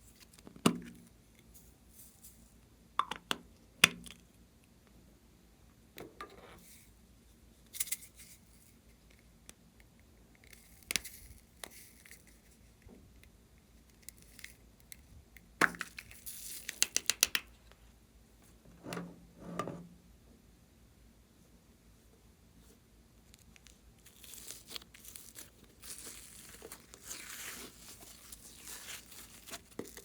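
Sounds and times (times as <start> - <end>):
crisp clicks and taps from handling: 15.6 - 17.5
soft rustles: 22.6 - 30.0.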